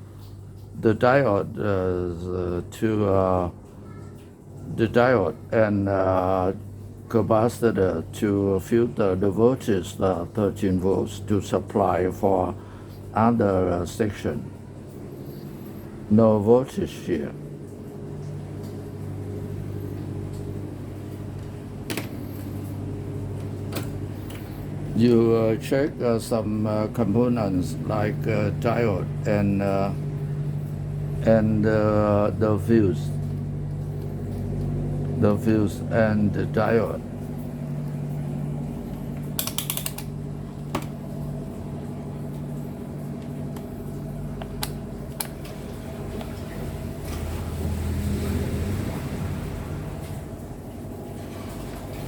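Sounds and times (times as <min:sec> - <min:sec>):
steady low hum: 0:00.0 - 0:52.0
clicks of test probes and tools: 0:39.2 - 0:40.1.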